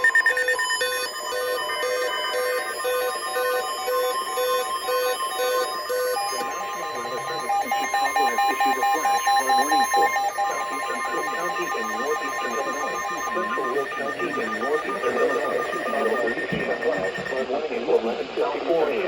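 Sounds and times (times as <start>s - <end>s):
fast beeps: 0.0s - 17.5s
long steady alert tone: 0.0s - 17.5s
higher beeping: 6.4s - 17.4s
synthesized announcer voice: 6.4s - 19.0s.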